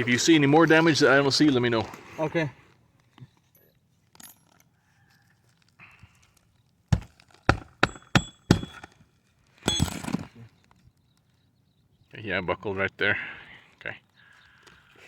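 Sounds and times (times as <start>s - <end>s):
sharp knocks on shingles: 6.9s - 9.0s.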